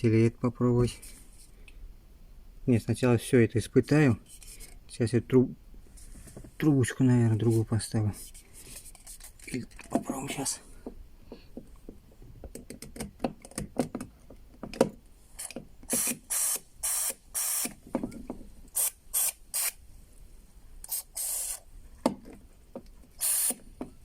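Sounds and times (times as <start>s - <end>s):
aerosol can spraying: 15.9s - 17.7s.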